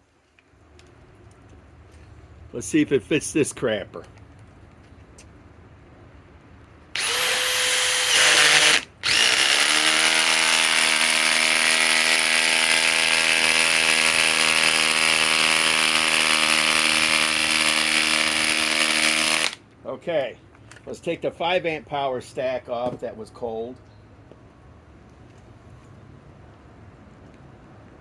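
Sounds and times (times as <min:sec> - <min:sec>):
impact driver humming: 0:07.0 - 0:19.6.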